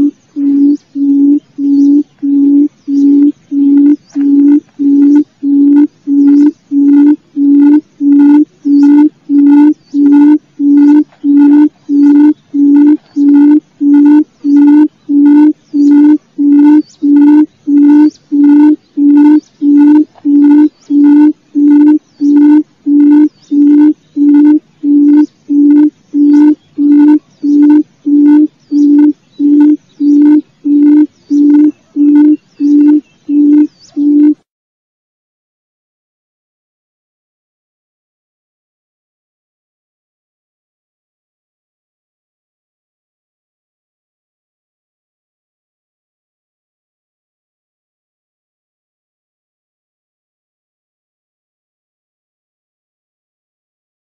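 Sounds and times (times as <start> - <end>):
quail hooting call: 0.0 - 34.4.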